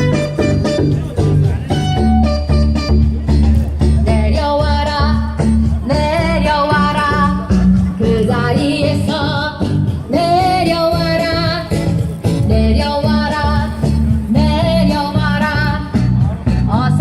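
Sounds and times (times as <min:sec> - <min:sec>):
instrumental accompaniment with bass: 0:00.0 - 0:17.0.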